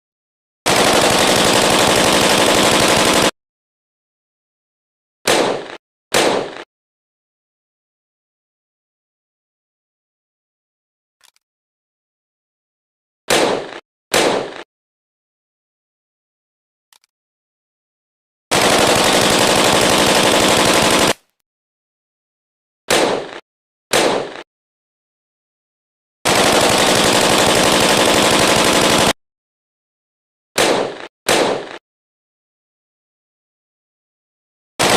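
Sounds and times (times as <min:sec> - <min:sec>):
rifle gunfire bursts: 0:00.7 - 0:03.3, 0:18.5 - 0:21.2, 0:26.3 - 0:29.2.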